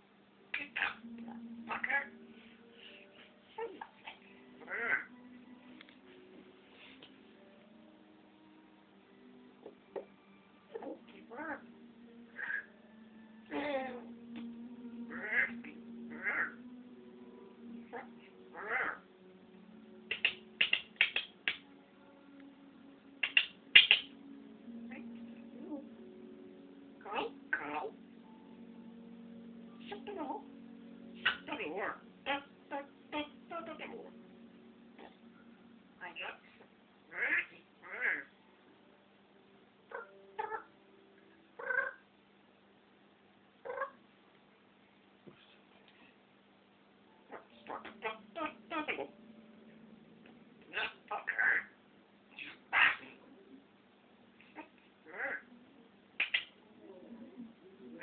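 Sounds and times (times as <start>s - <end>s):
faint steady hum: 0.0s - 58.0s
parrot squawks: 0.5s - 2.2s, 2.8s - 5.2s, 10.7s - 12.8s, 13.4s - 14.1s, 15.1s - 16.7s, 17.6s - 19.0s, 20.0s - 21.6s, 23.2s - 24.2s, 27.0s - 28.0s, 29.8s - 34.2s, 36.0s - 38.4s, 39.9s - 40.7s, 41.6s - 42.0s, 43.6s - 44.0s, 47.3s - 49.2s, 50.6s - 51.8s, 52.4s - 53.2s, 54.4s - 55.5s, 56.2s - 56.6s.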